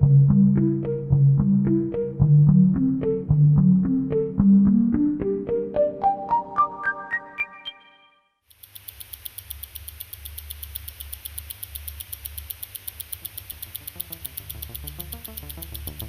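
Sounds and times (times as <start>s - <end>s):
fast electronic ticking: 8.5s - 16.0s
pulsing electronic pattern: 13.2s - 16.0s.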